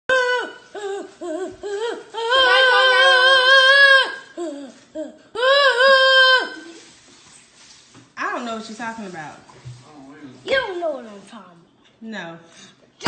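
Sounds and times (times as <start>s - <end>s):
high voice vocalising without words: 0.1s - 6.9s.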